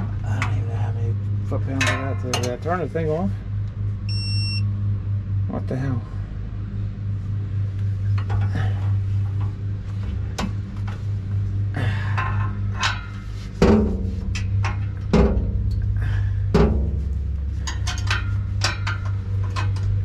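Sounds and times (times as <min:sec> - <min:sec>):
steady low hum: 0:00.0 - 0:20.0
metal tools knocking: 0:01.7 - 0:02.7, 0:16.6 - 0:19.9.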